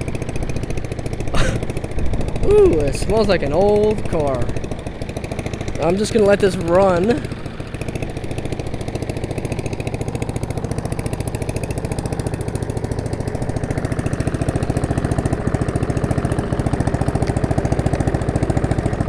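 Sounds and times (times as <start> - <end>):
lawn mower engine running: 0.0 - 19.0.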